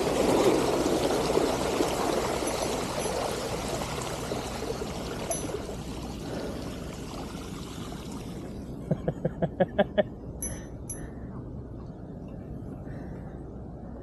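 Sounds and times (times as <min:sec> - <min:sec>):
bicycle wheels splashing through water: 0:00.0 - 0:08.4.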